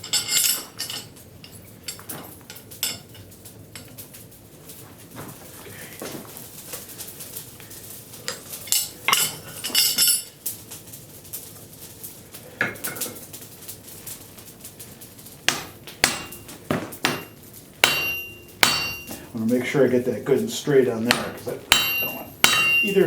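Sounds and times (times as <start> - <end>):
hammer striking iron on anvil: 15.5 - 19.3, 21.1 - 23.0.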